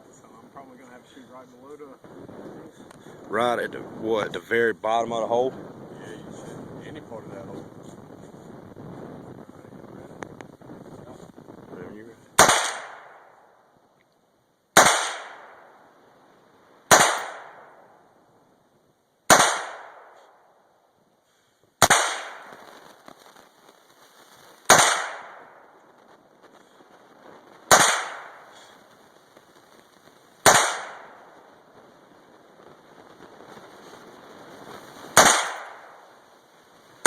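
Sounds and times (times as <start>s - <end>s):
rifle shots echoing: 12.4s - 13.5s, 14.8s - 15.9s, 16.9s - 17.9s, 19.3s - 20.5s, 21.8s - 22.6s, 24.7s - 25.8s, 27.7s - 28.8s, 30.4s - 31.4s, 35.1s - 36.2s.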